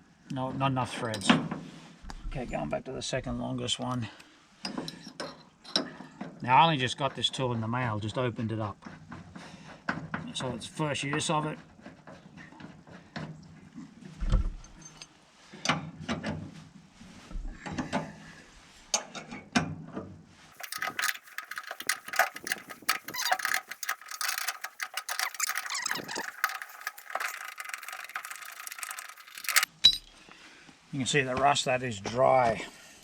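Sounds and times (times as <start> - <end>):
metallic ratcheting clicks: 20.6 - 29.7
metal tool parts knocking: 20.6 - 30.1.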